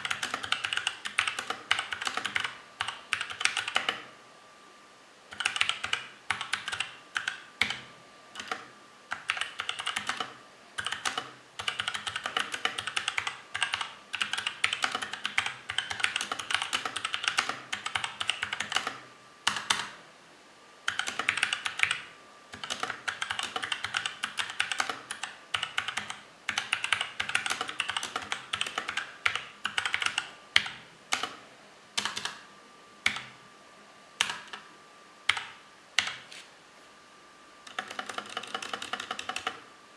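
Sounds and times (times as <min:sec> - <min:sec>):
mechanical keyboard typing: 0:00.0 - 0:04.1, 0:05.3 - 0:20.0, 0:20.9 - 0:31.4, 0:32.0 - 0:32.4, 0:33.0 - 0:33.4, 0:34.2 - 0:34.6, 0:35.3 - 0:36.3, 0:37.7 - 0:39.7.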